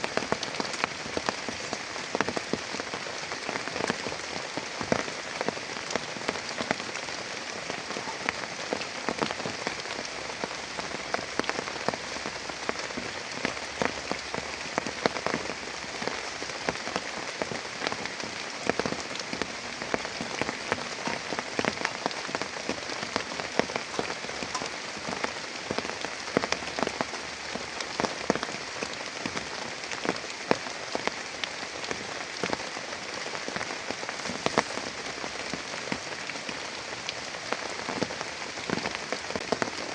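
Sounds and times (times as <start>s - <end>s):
heavy rain falling: 0.0s - 39.9s
raindrops tapping a surface: 0.0s - 39.9s.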